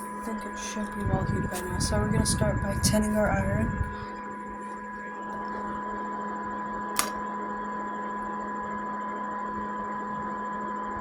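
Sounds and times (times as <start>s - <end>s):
electric fan humming: 0.0s - 7.3s
sharp click: 7.0s - 7.2s.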